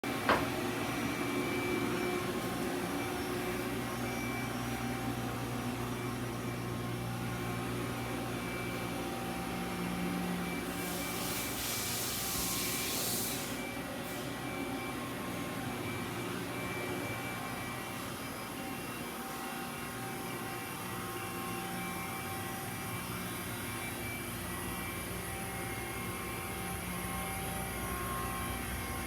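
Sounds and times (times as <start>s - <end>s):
hiss: 10.7s - 13.6s.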